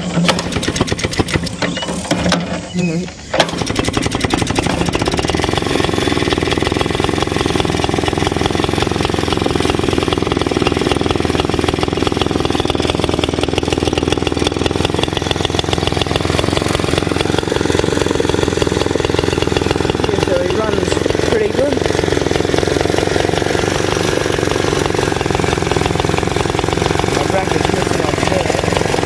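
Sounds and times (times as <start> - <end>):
two-stroke mower engine running: 0.0 - 29.0.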